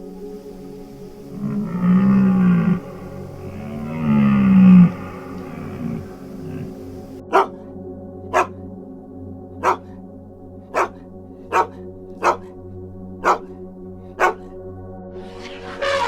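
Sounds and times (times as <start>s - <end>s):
animal barking: 0.0s - 7.6s, 8.3s - 8.6s, 9.6s - 9.9s, 10.7s - 12.6s, 13.2s - 13.6s, 14.2s - 14.5s
background music: 0.0s - 16.0s.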